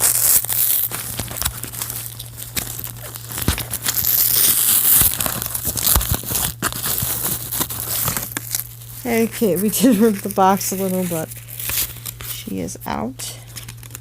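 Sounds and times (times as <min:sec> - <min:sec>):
packaging crinkling and tearing: 0:00.0 - 0:12.6, 0:13.4 - 0:14.0.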